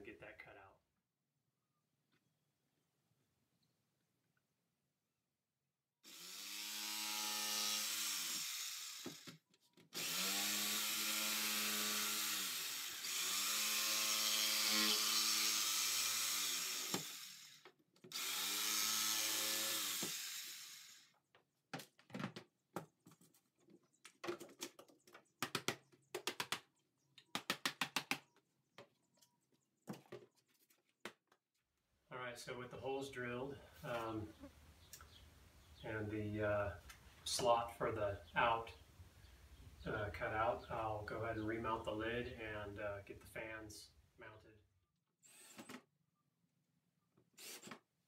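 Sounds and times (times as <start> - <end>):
electric drill boring plastic: 6.0 - 21.2, 47.4 - 47.8.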